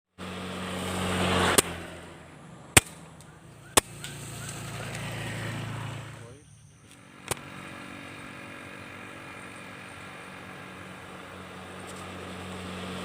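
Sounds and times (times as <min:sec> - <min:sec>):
low engine hum: 0:00.2 - 0:13.0
sharp cracks: 0:01.4 - 0:02.0, 0:02.7 - 0:05.5, 0:06.9 - 0:07.6.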